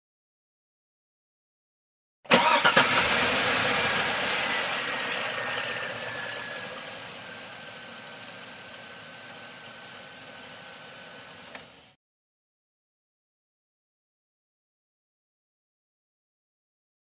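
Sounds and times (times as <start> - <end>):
car engine starting and idling: 2.3 - 12.0.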